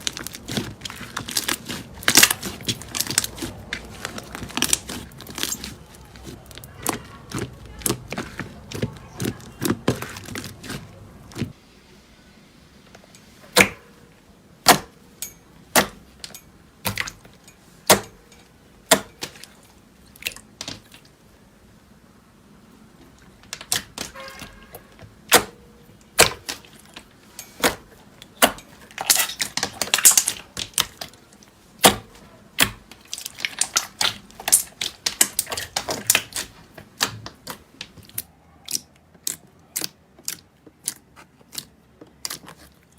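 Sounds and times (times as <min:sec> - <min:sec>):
slime clicking and popping: 0:00.0 - 0:10.8, 0:23.4 - 0:24.5, 0:25.3 - 0:31.2, 0:31.8 - 0:42.7.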